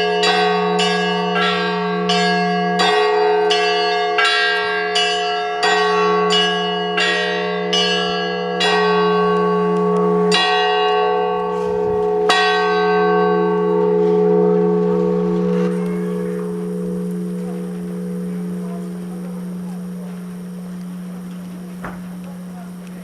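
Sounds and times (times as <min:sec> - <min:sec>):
church bells ringing: 0:00.0 - 0:23.0
low bell hum: 0:00.0 - 0:23.0.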